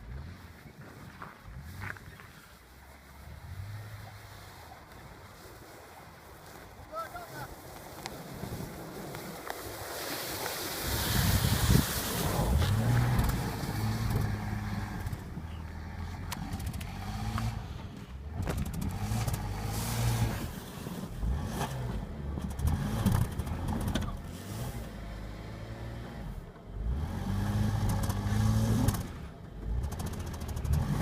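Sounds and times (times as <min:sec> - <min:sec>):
car engine revving: 0:10.8 - 0:31.0.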